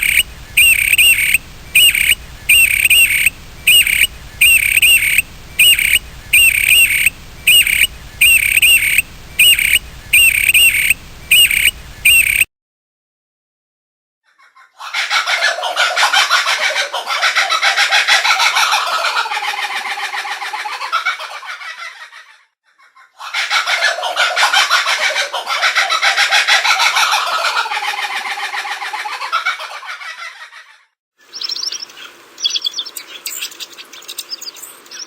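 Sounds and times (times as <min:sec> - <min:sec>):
chickens clucking: 0:00.0 - 0:12.4.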